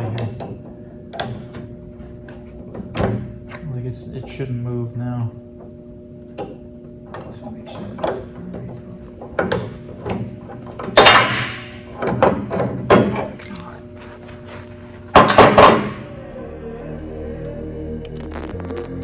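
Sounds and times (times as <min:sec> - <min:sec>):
metal parts clanking: 0:13.0 - 0:13.8
background music: 0:15.8 - 0:19.0.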